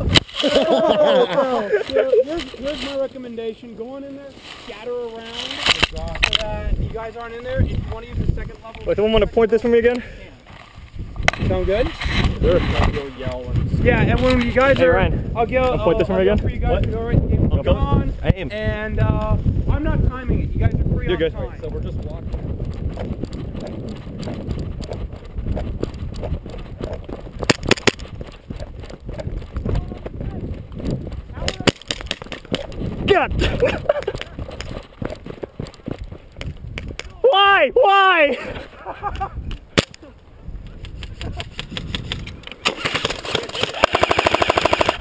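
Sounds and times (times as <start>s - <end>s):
footsteps walking: 22.0s - 33.1s, 33.8s - 37.0s
sharp clicks: 22.7s - 29.7s, 40.8s - 45.0s
airsoft gun rapid fire: 42.6s - 45.0s.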